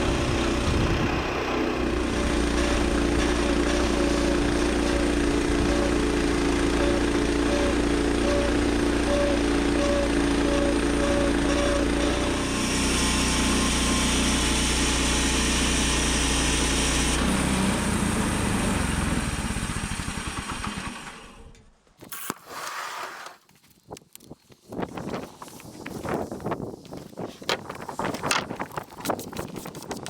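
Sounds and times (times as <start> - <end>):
sawmill engine running: 0.0 - 21.6
band blade sawing log: 22.3 - 23.4.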